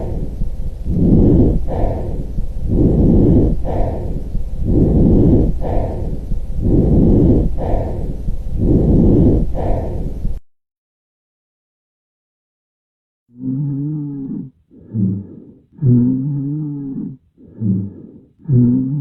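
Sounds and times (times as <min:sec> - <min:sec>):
lung breath sounds: 0:00.0 - 0:10.4, 0:13.4 - 0:19.0.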